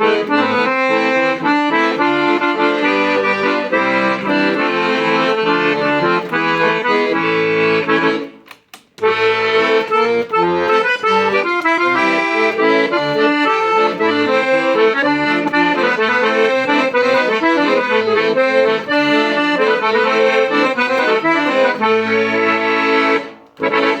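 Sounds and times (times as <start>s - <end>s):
accordion playing: 0.0s - 24.0s.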